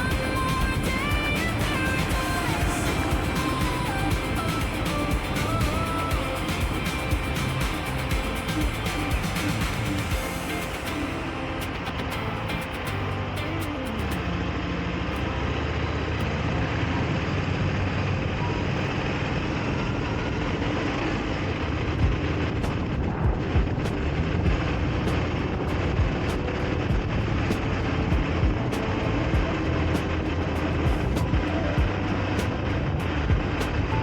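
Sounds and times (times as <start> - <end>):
motorcycle engine running: 0.0 - 34.0
wind rushing over microphone: 16.6 - 34.0
low buffeting thumps: 22.0 - 34.0.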